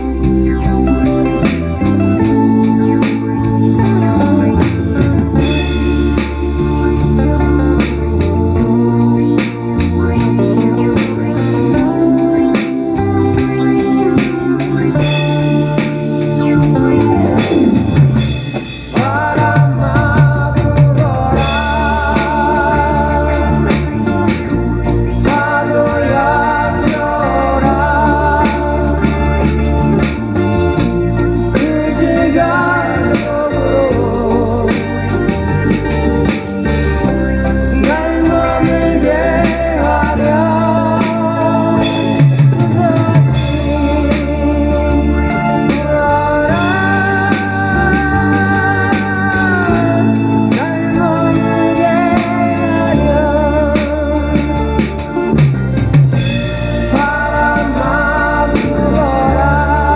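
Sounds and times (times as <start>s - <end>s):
band recording melody: 0.0s - 59.9s
drum kit playing: 0.0s - 59.9s
sustained keyboard and guitar: 0.0s - 59.9s
falling pitch glide: 15.0s - 20.0s.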